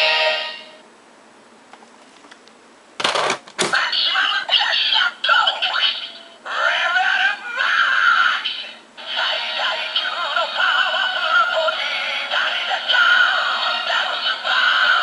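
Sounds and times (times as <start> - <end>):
toy electronic voice and music: 4.0 - 15.0.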